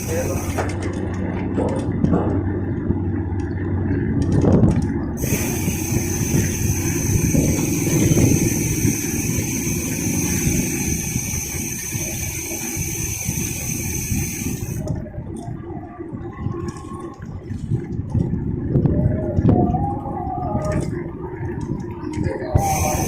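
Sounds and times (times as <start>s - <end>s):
bike rolling rumble: 0.0s - 23.0s
cicadas buzzing: 5.2s - 14.7s, 22.6s - 23.0s.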